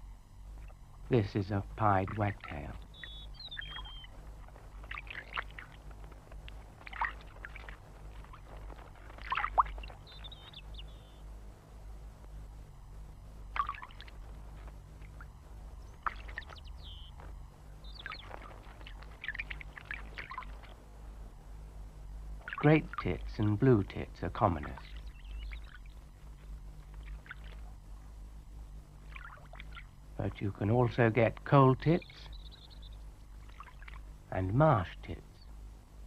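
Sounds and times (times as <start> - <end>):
steady low hum: 0.0 - 36.0
songbird calls: 0.6 - 5.8, 6.6 - 11.3, 13.5 - 14.2, 15.0 - 20.8, 22.4 - 27.8, 31.1 - 35.6.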